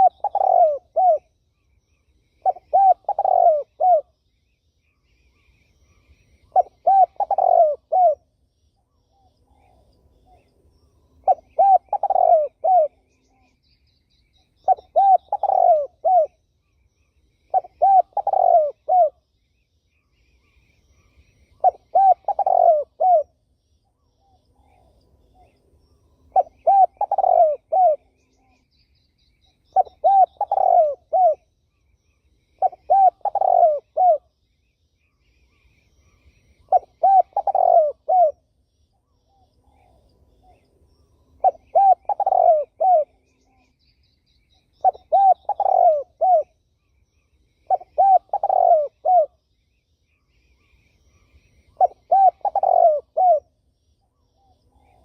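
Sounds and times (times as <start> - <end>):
dove cooing: 0.0 - 1.3, 2.4 - 4.2, 6.5 - 8.2, 11.2 - 13.5, 14.6 - 16.4, 17.5 - 19.2, 21.5 - 23.3, 26.3 - 28.6, 29.7 - 31.5, 32.6 - 34.3, 36.6 - 38.4, 41.4 - 43.6, 44.8 - 46.6, 47.7 - 49.4, 51.1 - 53.5
faint bird chirps: 0.0 - 55.0.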